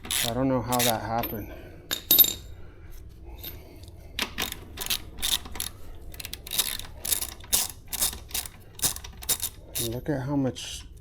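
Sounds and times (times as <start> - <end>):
sharp metal clicks: 4.2 - 10.0.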